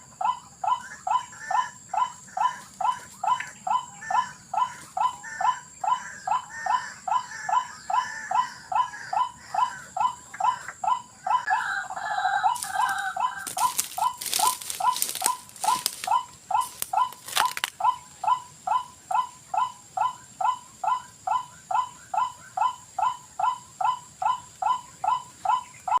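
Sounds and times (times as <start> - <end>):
sharp crackles: 12.6 - 17.8.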